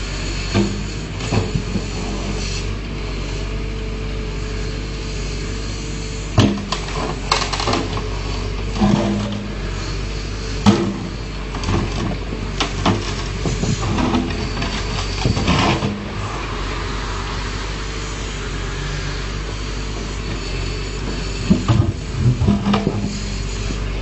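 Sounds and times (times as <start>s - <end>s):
backhoe engine running: 0.0s - 24.0s
clatter and scraping of stone: 6.4s - 10.0s, 10.6s - 16.3s, 20.3s - 23.5s.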